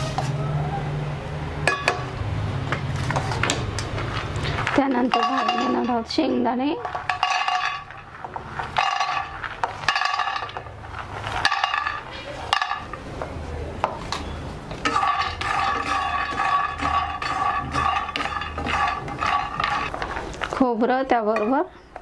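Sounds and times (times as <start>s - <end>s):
metal spatula scraping pan: 2.8s - 13.4s, 14.0s - 20.6s
peanuts clinking in pan: 3.6s - 13.4s, 14.8s - 20.7s.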